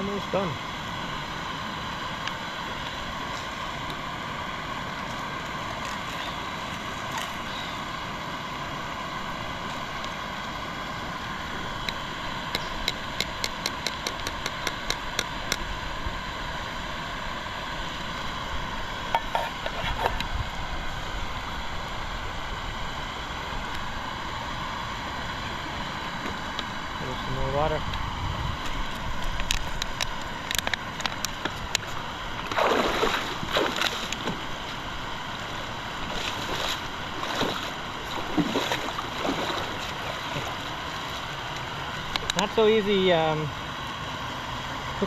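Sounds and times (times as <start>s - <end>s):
river rushing around rock: 32.4s - 43.2s.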